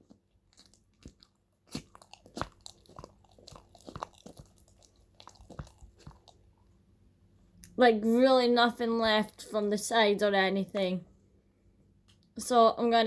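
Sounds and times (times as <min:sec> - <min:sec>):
slime squelching as stirred: 0:00.0 - 0:06.8.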